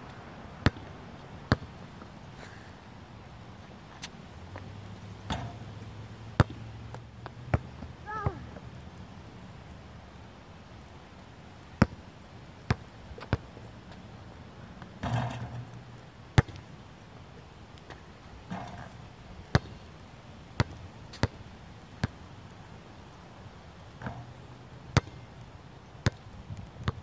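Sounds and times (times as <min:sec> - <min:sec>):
basketball bouncing: 0:01.5 - 0:01.7, 0:05.3 - 0:05.8, 0:06.4 - 0:06.6, 0:19.5 - 0:19.8, 0:24.0 - 0:24.3, 0:24.9 - 0:25.2.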